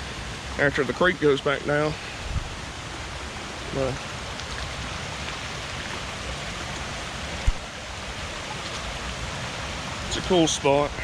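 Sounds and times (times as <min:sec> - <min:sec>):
creek rushing: 0:00.0 - 0:11.0.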